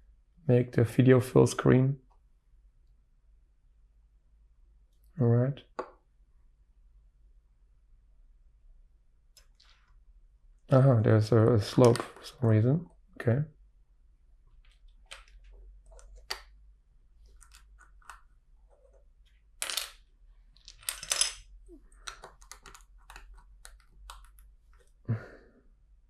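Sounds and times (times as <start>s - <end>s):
plastic bricks clicking and clattering: 19.6s - 24.4s.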